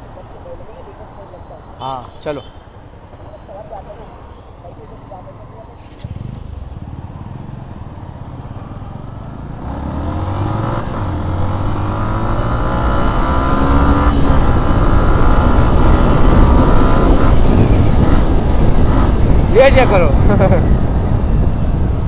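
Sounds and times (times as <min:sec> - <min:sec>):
motorcycle engine accelerating: 0:05.8 - 0:22.0
wind rushing over microphone: 0:09.6 - 0:22.0.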